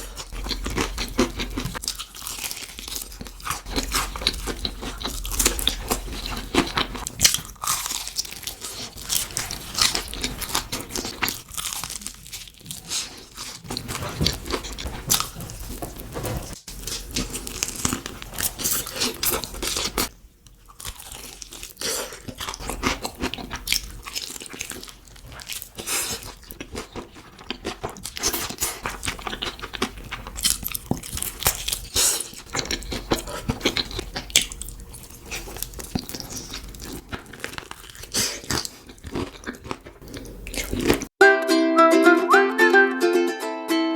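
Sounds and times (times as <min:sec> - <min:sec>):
crunchy bites and chewing: 0:00.0 - 0:41.1.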